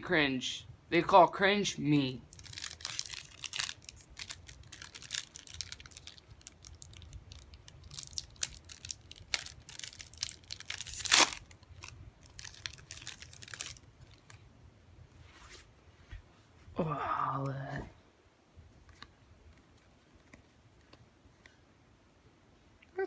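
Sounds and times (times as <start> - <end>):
wrappers and cards crinkling: 2.2 - 14.4.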